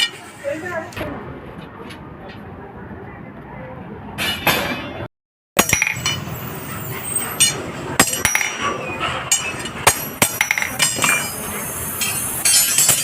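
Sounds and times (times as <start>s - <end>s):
metal clinking on steel rods: 5.6s - 6.4s, 7.3s - 13.0s.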